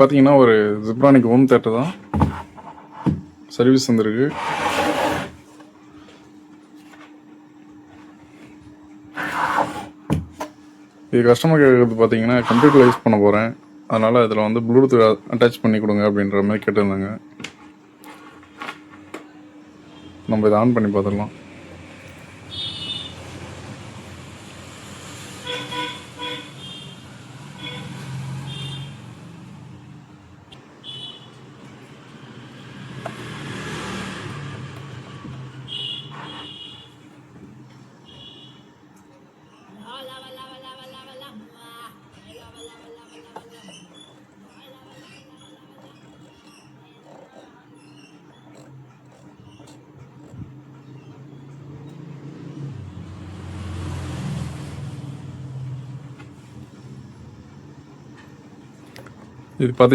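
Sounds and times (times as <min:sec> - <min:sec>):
traffic engines rumbling: 0:21.2 - 0:30.3, 0:31.3 - 0:37.1, 0:44.8 - 0:58.6
car horn toot: 0:22.5 - 0:23.2, 0:25.4 - 0:27.0, 0:27.6 - 0:29.0, 0:30.8 - 0:31.4, 0:35.7 - 0:37.0, 0:38.0 - 0:38.7.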